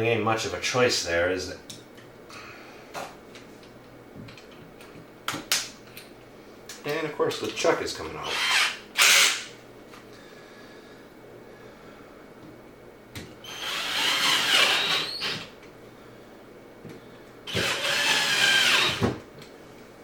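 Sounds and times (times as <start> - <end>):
power drill driving screws: 8.3 - 9.5, 13.4 - 15.5, 17.5 - 19.1.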